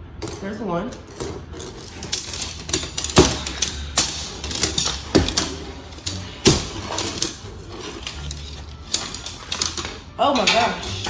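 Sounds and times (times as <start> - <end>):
handling noise: 0.0 - 11.0
tent poles clicking together: 1.6 - 11.0.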